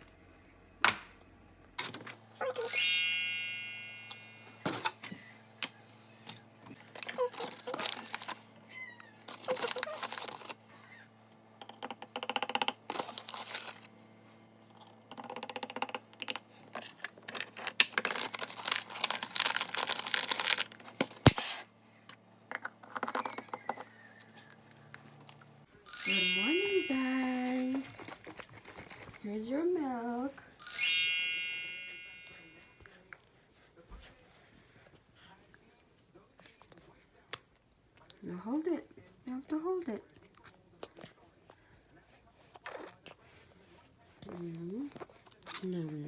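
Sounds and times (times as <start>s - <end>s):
bright ringing ding: 2.4s - 4.6s, 25.9s - 27.4s, 30.6s - 32.6s.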